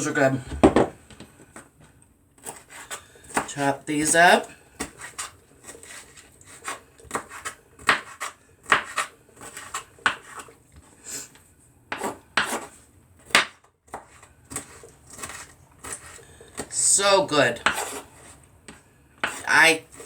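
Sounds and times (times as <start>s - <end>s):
knife chopping on cutting board: 2.4s - 3.6s, 4.4s - 10.5s, 11.9s - 16.7s, 17.6s - 18.4s, 19.2s - 20.0s.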